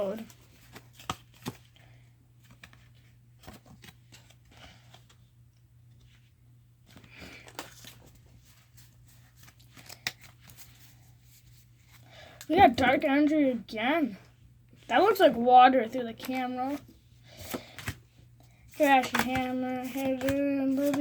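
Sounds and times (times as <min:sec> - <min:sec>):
cards clicking being set down: 0:18.8 - 0:21.0.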